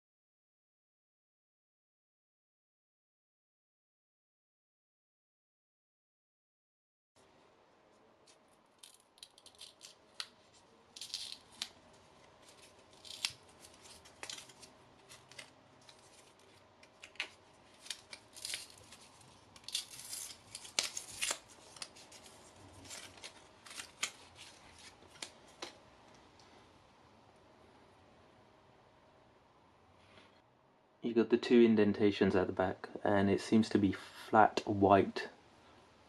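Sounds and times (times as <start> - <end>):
packaging crinkling: 8.2 - 25.8.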